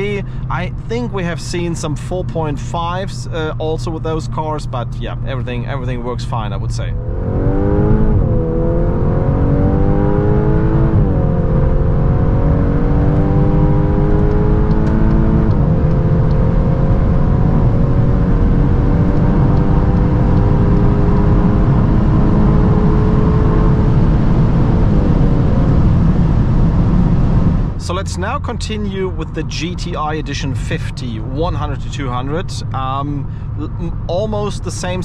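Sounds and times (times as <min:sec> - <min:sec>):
car engine accelerating: 0:00.0 - 0:35.0
road and wind rumble: 0:00.0 - 0:35.0.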